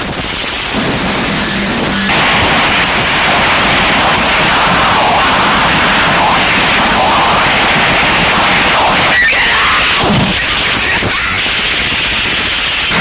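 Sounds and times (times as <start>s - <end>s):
loud static-like noise: 0.0s - 13.0s
faint wavering tones: 0.7s - 3.1s.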